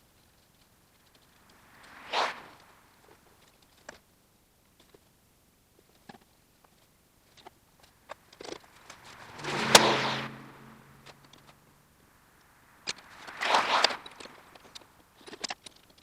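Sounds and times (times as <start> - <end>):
low hum: 8.6 - 11.9.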